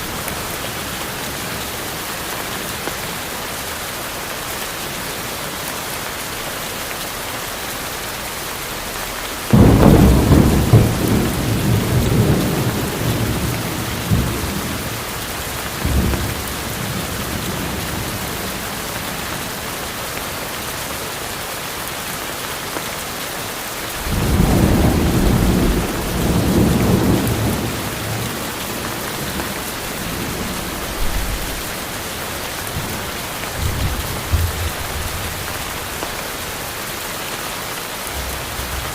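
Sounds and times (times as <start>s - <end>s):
steady rain: 0.0s - 38.9s
thunder rumbling: 9.5s - 18.2s, 24.0s - 36.0s.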